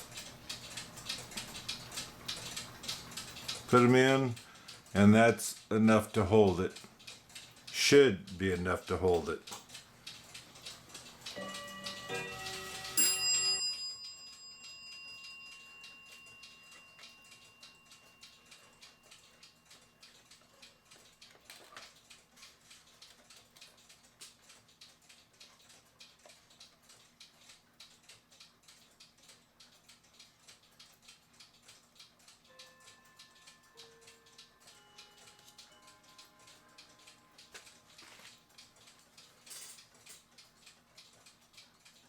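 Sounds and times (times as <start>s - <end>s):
clock ticking: 0.0s - 42.0s.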